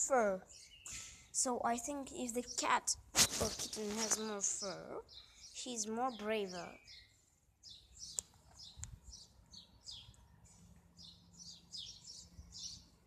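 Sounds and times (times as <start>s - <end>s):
small birds chirping: 0.0s - 13.0s
sharp clicks: 8.1s - 9.0s.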